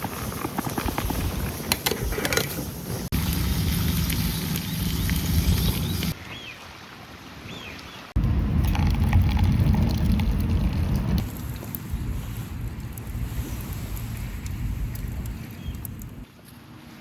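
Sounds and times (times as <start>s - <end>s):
bird chirping: 4.1s - 6.6s
wind rumble on microphone: 8.2s - 16.3s.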